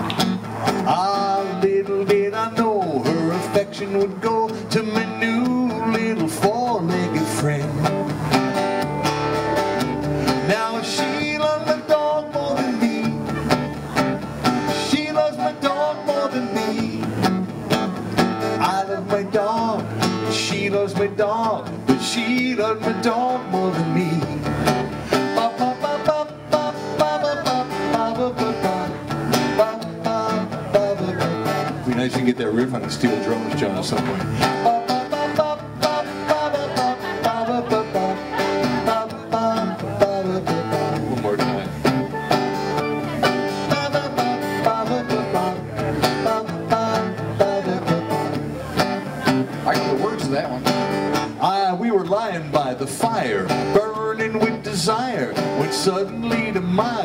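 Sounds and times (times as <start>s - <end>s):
picked acoustic guitar: 0.0s - 57.0s.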